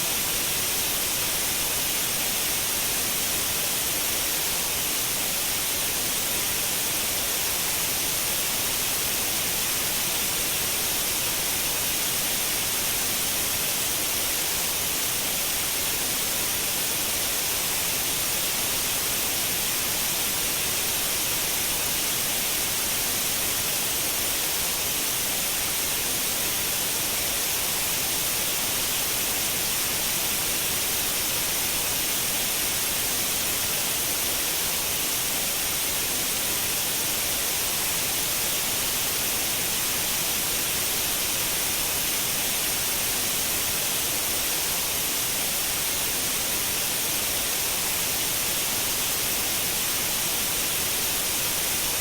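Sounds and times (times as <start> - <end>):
white noise hiss: 0.0 - 52.0.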